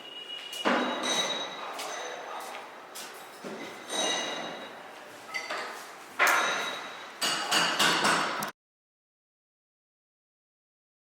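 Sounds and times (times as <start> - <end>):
sharp ringing clinks: 0.6 - 2.2, 3.3 - 4.8, 6.2 - 7.5.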